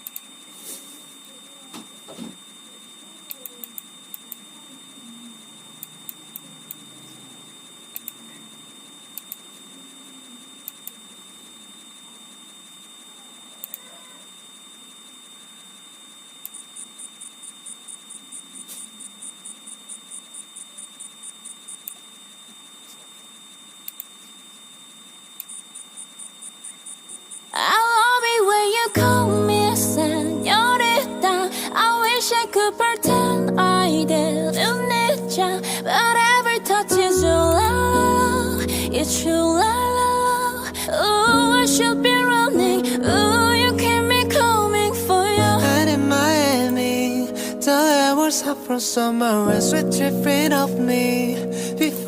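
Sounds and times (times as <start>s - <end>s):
faint hiss and hum: 0.0s - 52.0s
sharp clicks: 23.8s - 24.1s.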